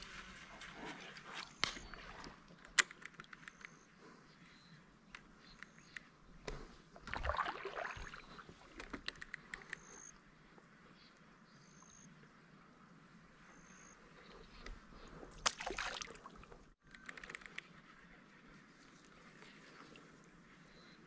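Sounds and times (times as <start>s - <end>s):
water splash: 7.0s - 8.3s, 15.4s - 16.4s.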